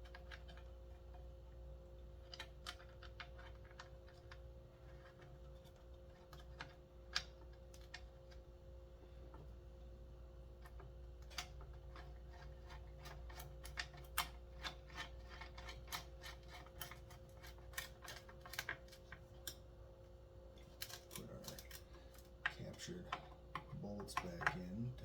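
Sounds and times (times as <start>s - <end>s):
faint steady hum: 0.0s - 25.0s
clicks and taps of parts: 20.6s - 24.7s.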